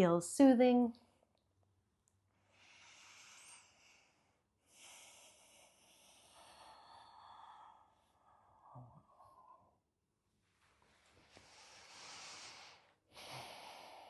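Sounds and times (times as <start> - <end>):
faint slow breathing: 2.4 - 9.8, 11.0 - 14.0.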